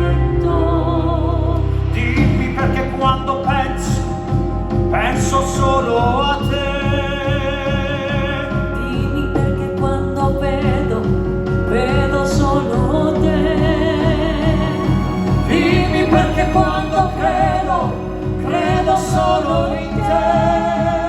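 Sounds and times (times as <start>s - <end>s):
orchestral accompaniment: 0.0s - 21.0s
person singing with vibrato: 0.0s - 21.0s.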